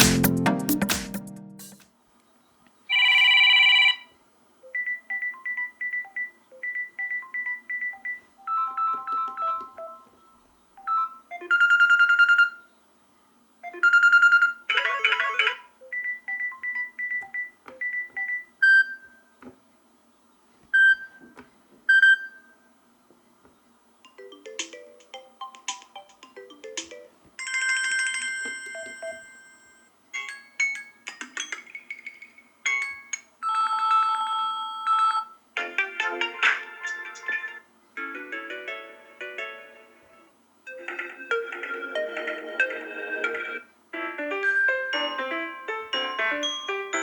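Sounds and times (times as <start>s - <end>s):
electronic ringtone melodies: 2.9s - 10.2s, 10.8s - 12.6s, 13.6s - 19.1s, 24.1s - 35.3s, 40.7s - 47.0s.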